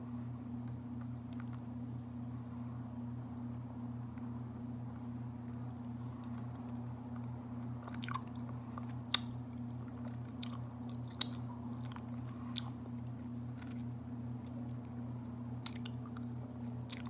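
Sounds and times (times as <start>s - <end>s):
steady low hum: 0.0s - 17.0s
person chewing honeycomb: 5.8s - 15.0s, 15.6s - 17.0s.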